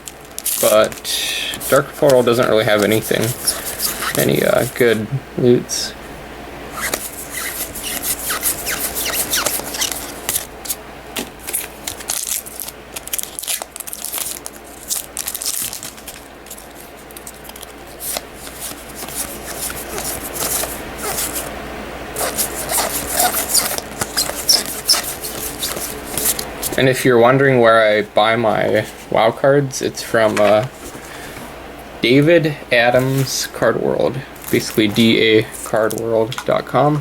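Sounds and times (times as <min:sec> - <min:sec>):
wrappers tearing and crinkling: 0:00.0 - 0:04.8, 0:06.8 - 0:10.8, 0:11.4 - 0:21.5, 0:22.2 - 0:26.8
cards rubbing and scraping: 0:00.4 - 0:05.0, 0:06.7 - 0:10.8, 0:11.4 - 0:21.5, 0:22.2 - 0:26.9.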